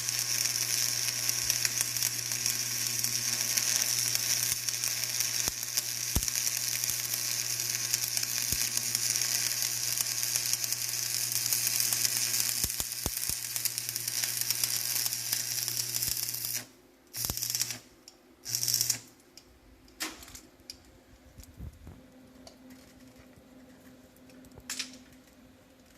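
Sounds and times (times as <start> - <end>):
welding arc crackling sizzle: 0.0 - 20.4.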